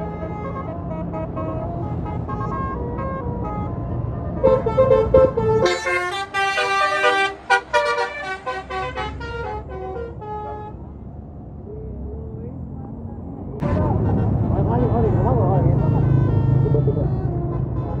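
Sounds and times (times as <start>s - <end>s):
bus engine: 0.0s - 18.0s
musical air horn tune: 4.4s - 10.7s.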